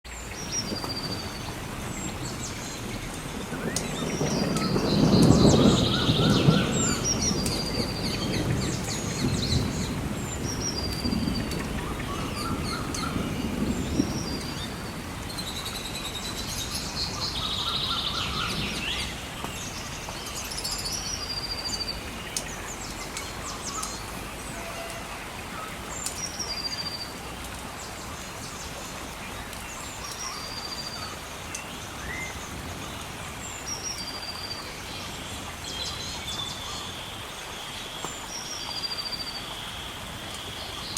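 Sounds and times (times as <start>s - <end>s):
rain or river water: 0.0s - 40.9s
birds chirping: 0.2s - 40.9s
thunder rumbling: 0.4s - 26.5s.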